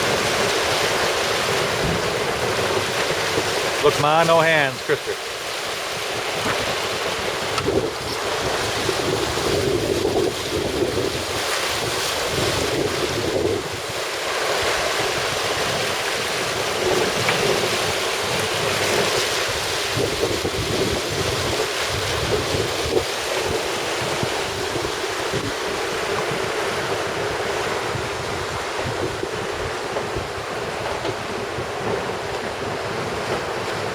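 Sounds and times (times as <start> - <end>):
wind buffeting microphone: 0.0 - 3.8, 4.9 - 33.9
seawater rushing past hull: 0.0 - 33.9.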